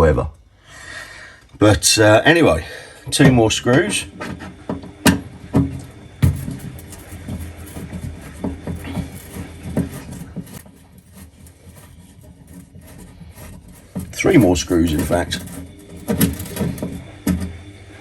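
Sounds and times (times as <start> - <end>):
light ticks and scraping: 3.7 - 17.6
screwdriver clicking on sheet metal: 4.3 - 17.5.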